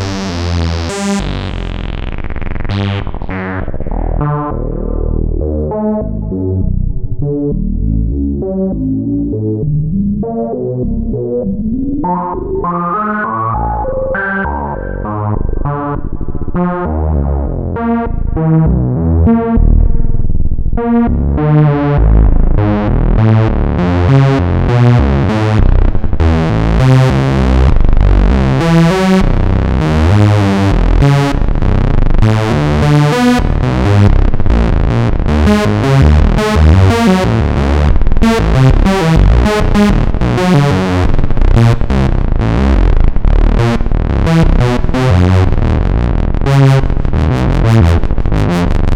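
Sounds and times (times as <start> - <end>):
analog synthesizer fast notes: 0.0 - 6.6, 10.2 - 20.1, 20.7 - 48.9.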